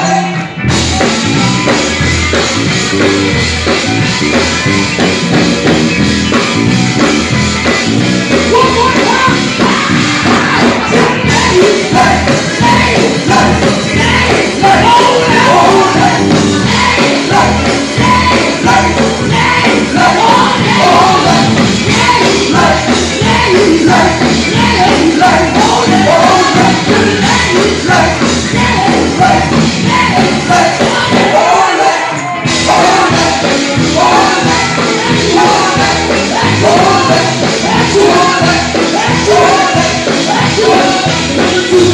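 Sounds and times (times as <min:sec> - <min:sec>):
live band drums and guitar: 0:00.0 - 0:41.9
gospel group singing: 0:08.5 - 0:41.9.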